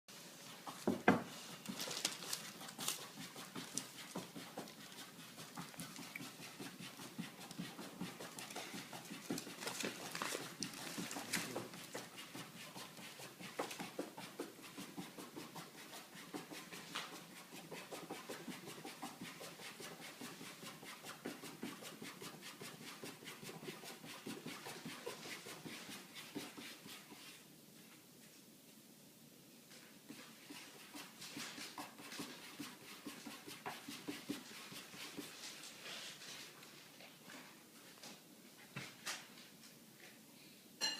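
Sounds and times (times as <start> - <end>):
animal panting: 0.5 - 27.2.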